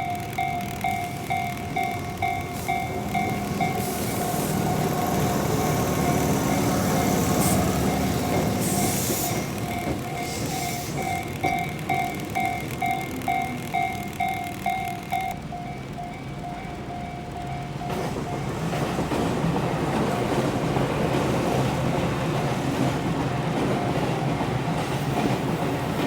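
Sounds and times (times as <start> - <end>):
level crossing alarm bell dinging: 0.0 - 18.9
train wheels rushing on rails: 0.0 - 26.0.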